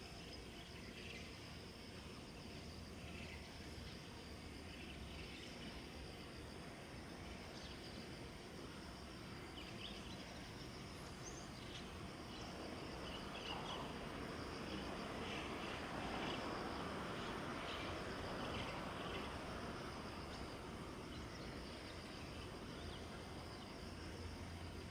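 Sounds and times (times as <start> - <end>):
insects chirring: 0.0 - 24.9
short insect chirps: 0.0 - 24.9.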